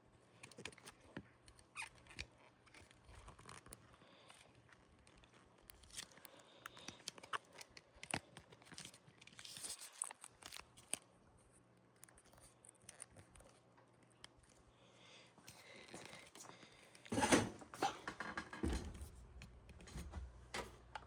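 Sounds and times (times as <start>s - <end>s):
plastic and hardware handling noises: 0.3s - 11.2s, 15.4s - 21.0s.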